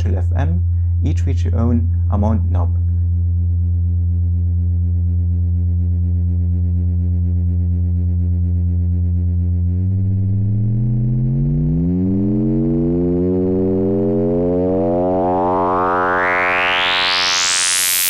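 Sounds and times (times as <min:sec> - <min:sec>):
low buzzing synthesizer tone: 0:00.0 - 0:18.0.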